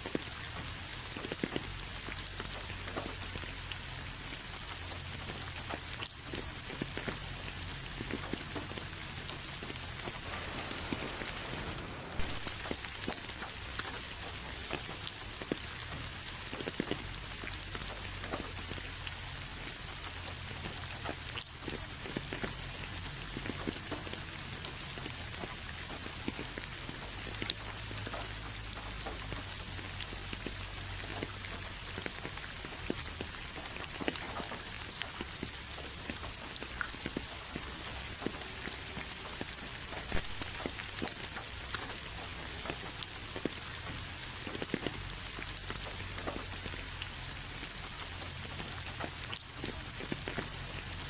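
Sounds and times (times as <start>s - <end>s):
rain pattering on hard surface: 0.0s - 51.0s.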